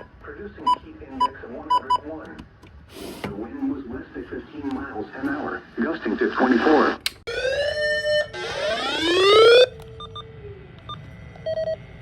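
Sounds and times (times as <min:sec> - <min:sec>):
electronic whoops: 0:07.3 - 0:09.7.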